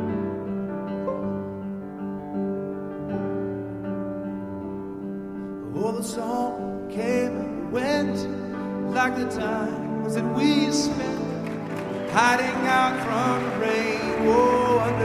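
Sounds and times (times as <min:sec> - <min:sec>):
piano chords: 0:00.0 - 0:15.0
man singing: 0:05.6 - 0:15.0.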